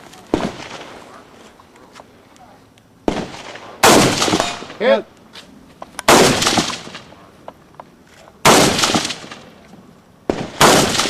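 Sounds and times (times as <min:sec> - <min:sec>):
rifle shots with echo: 0:00.3 - 0:01.2, 0:03.0 - 0:05.0, 0:06.0 - 0:07.2, 0:08.4 - 0:09.6, 0:10.2 - 0:11.0.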